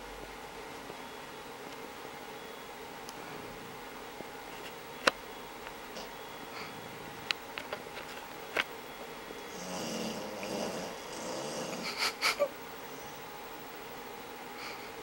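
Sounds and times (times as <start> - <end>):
dog snoring: 9.5 - 12.2.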